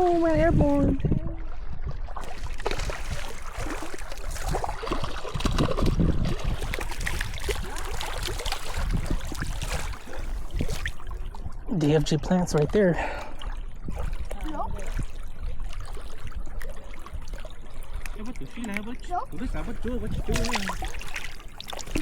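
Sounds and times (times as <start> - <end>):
water splashing and sloshing: 0.0 - 22.0.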